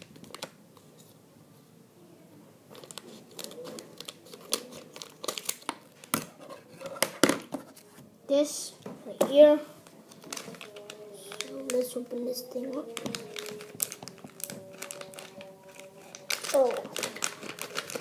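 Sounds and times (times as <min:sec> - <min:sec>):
plastic packet crinkling: 0:02.7 - 0:06.2, 0:09.8 - 0:18.0.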